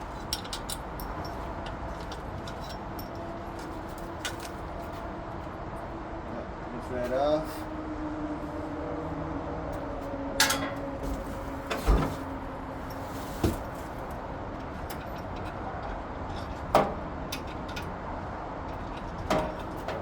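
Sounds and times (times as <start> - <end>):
metal tools clunking and clinking: 0.0 - 4.9, 10.4 - 14.0, 14.6 - 15.6, 16.3 - 18.0, 18.7 - 20.0.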